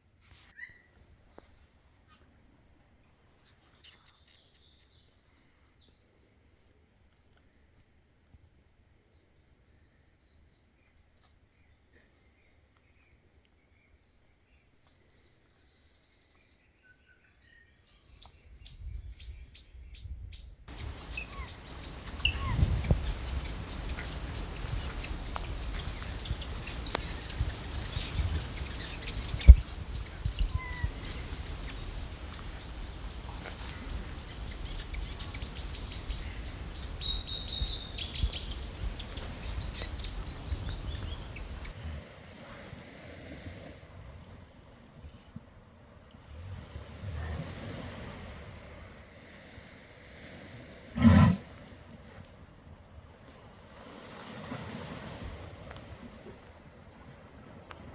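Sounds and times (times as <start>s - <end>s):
songbird singing: 13.8s - 41.8s
wind rumble on microphone: 18.1s - 45.5s.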